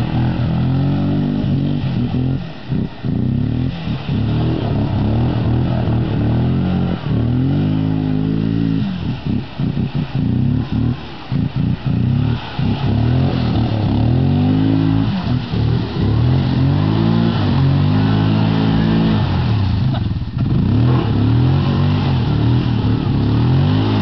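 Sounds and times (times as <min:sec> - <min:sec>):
quad bike engine revving: 0:00.0 - 0:24.0.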